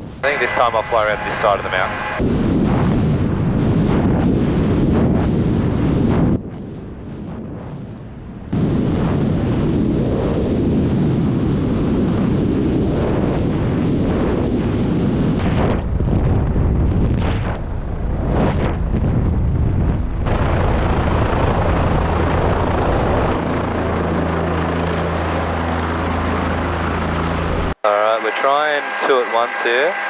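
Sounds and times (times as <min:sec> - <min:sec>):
helicopter rotor and engine rumble: 0:00.0 - 0:03.0, 0:15.6 - 0:30.0.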